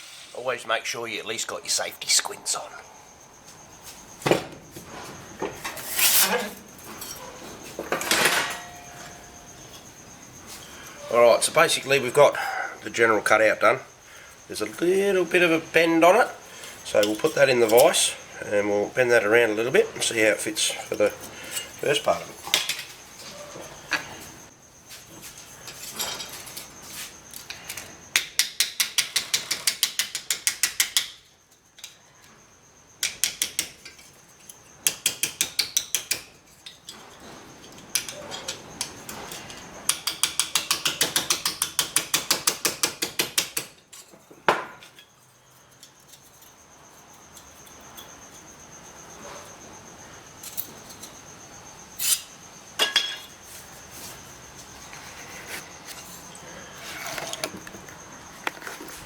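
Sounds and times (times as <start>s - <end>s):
hammer tapping on sheet steel: 39.9s - 43.8s.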